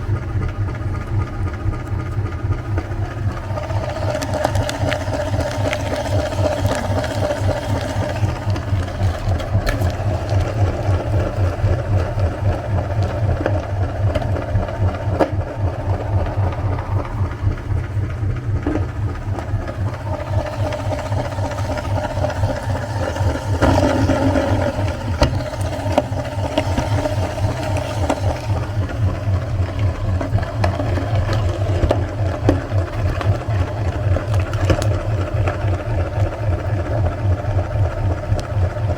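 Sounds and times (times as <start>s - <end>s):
electric meat grinder running: 2.9s - 17.6s, 19.1s - 38.9s.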